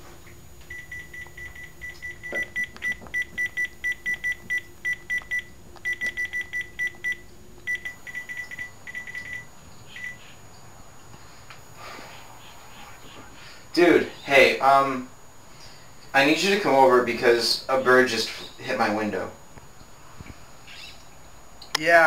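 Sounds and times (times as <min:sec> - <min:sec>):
phone keypad beeping: 0:00.7 - 0:10.2.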